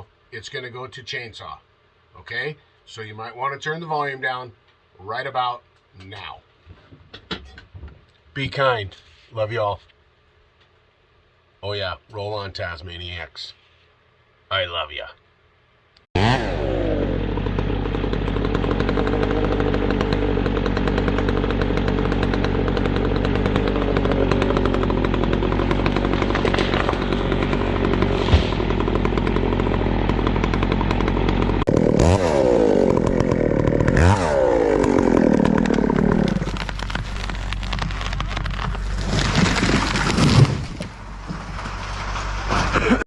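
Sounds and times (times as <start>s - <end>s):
chainsaw running: 16.2s - 43.0s.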